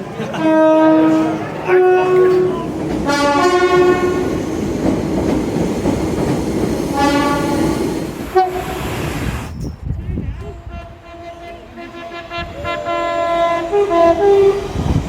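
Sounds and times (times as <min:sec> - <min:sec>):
train rumble and rail noise: 0:00.0 - 0:15.0
train two-tone horn: 0:00.3 - 0:04.3, 0:06.9 - 0:08.9, 0:10.4 - 0:14.8.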